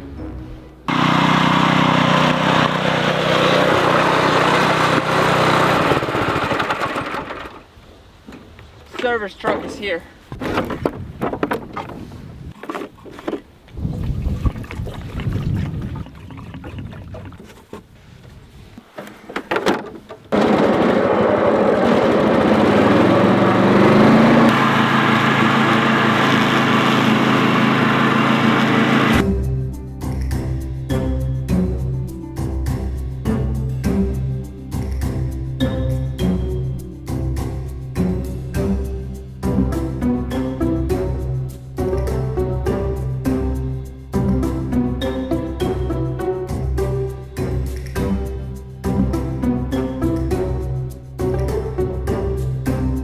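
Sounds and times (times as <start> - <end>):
music: 0.0 - 0.9, 29.1 - 53.0
lawn mower engine running: 0.9 - 7.8, 20.3 - 29.2.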